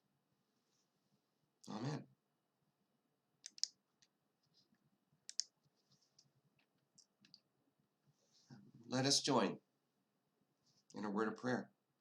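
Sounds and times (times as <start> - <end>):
faint sharp clicks: 3.4 - 4.6, 5.3 - 7.5.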